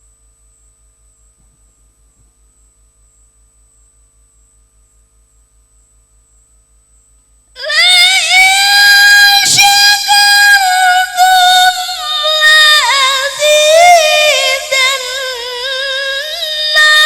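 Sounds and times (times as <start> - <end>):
solo voice melodic recitation: 7.6 - 17.0.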